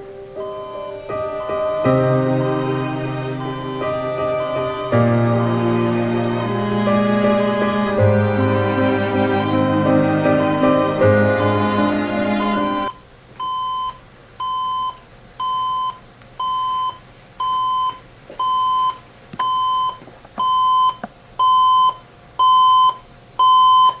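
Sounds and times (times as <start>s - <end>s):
alarm clock beeping: 0.0s - 6.0s
music: 0.0s - 12.9s.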